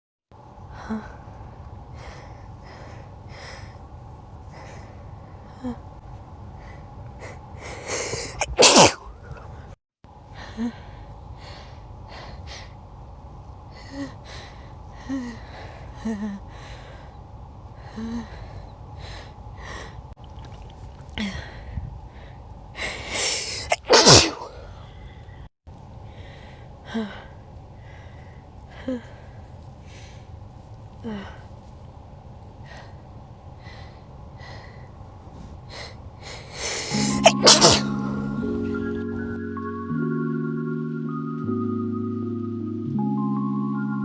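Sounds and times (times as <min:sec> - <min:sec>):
person sneezing: 0:08.2 - 0:09.1, 0:23.4 - 0:24.6, 0:36.8 - 0:38.0.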